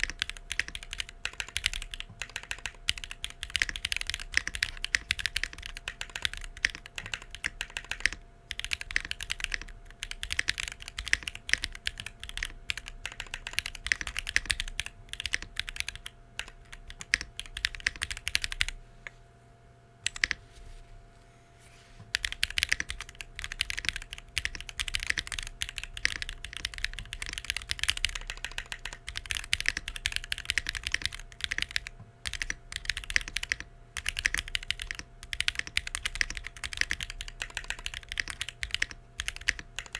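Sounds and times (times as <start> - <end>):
typing on mechanical keyboard: 0.0 - 18.8, 20.0 - 20.4, 22.1 - 39.9.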